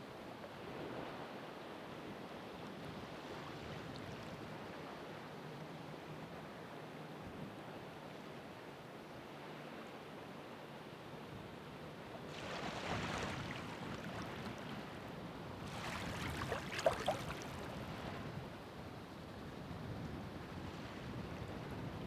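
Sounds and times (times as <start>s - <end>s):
water splashes: 12.3s - 15.0s, 15.6s - 17.9s
ocean waves breaking: 12.3s - 18.3s.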